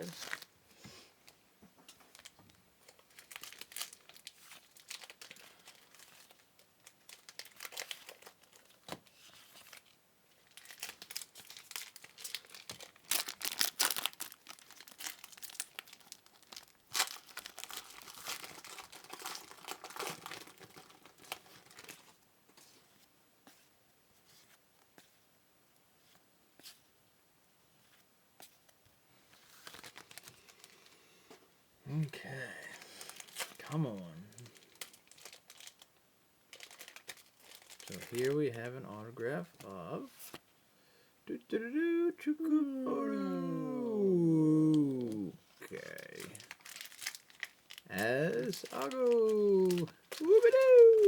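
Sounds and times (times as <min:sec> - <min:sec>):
wrappers tearing and crinkling: 0:00.0 - 0:00.5, 0:02.1 - 0:22.2, 0:29.4 - 0:30.8, 0:32.7 - 0:35.9, 0:36.5 - 0:38.7, 0:44.8 - 0:51.0.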